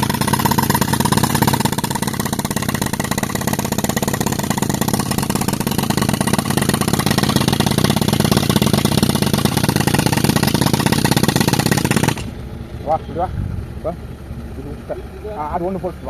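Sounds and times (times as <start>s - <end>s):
pneumatic rock breaker hammering: 0.0s - 12.4s.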